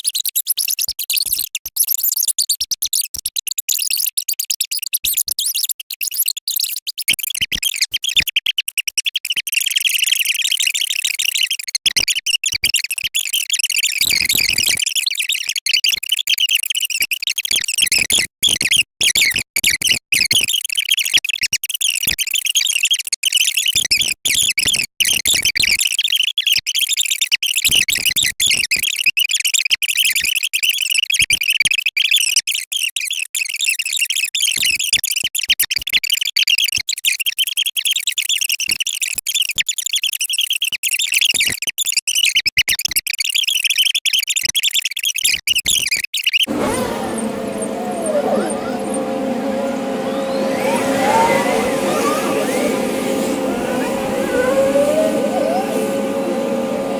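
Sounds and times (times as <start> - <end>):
sped-up sound effects: 46.5 - 56.9.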